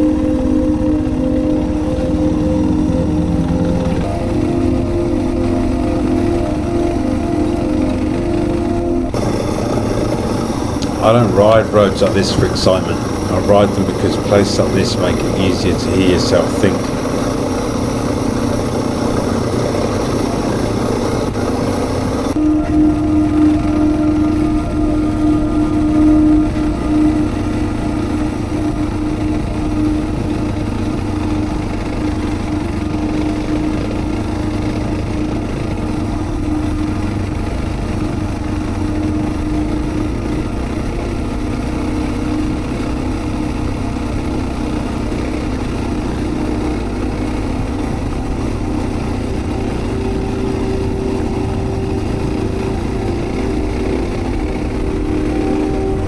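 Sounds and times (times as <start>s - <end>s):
motorcycle engine running: 16.9s - 56.0s.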